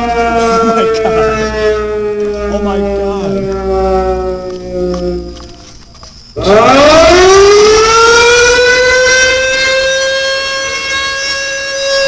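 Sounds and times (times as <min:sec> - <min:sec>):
air raid siren wailing: 0:00.0 - 0:12.0.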